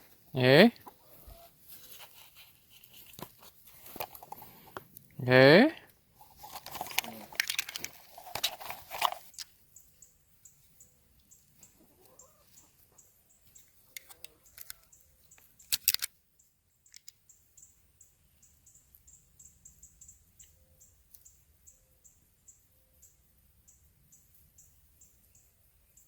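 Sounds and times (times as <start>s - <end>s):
faint high chirping: 16.4s - 26.0s.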